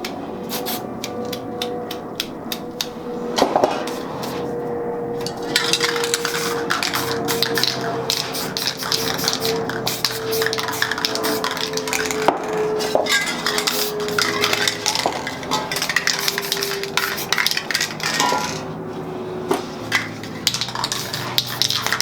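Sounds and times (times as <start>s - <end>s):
metallic clinks of spray cans: 0.5s - 0.8s, 5.2s - 18.7s, 19.8s - 22.0s.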